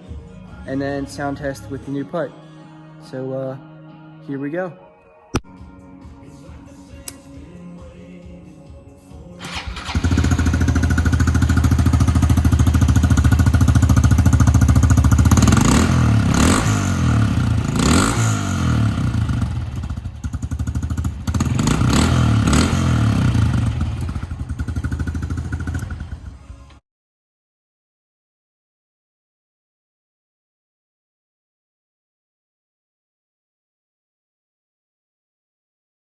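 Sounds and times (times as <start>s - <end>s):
motorbike engine idling and revving: 9.4s - 26.8s.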